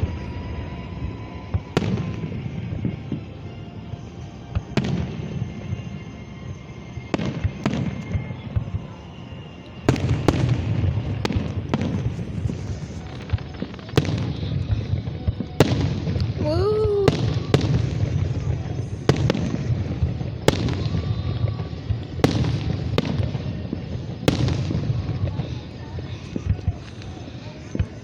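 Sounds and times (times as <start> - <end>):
fireworks rumble and crackle: 0.0 - 28.0
fireworks bangs: 9.9 - 28.0.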